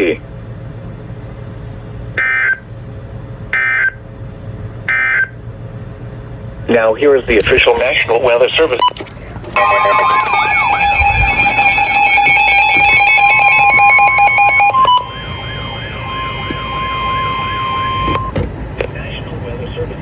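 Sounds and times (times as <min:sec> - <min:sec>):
steady tone with warble: 0:09.6 - 0:18.4
two-note alarm tone: 0:09.6 - 0:18.4.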